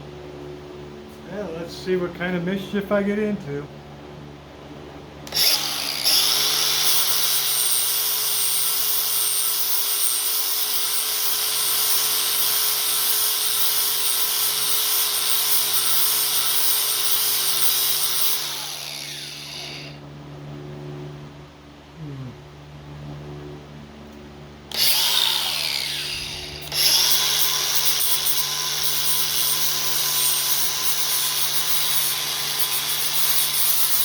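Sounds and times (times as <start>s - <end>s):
electric sander running: 5.3s - 20.0s, 24.7s - 34.0s.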